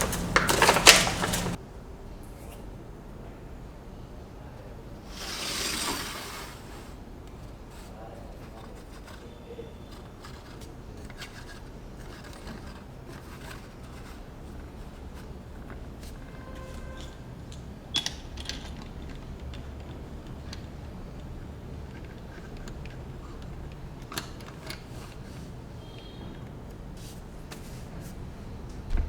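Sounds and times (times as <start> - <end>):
plastic bricks clicking: 0.0 - 1.6, 17.0 - 25.2
rubbing rustle: 0.0 - 1.6, 5.1 - 17.3.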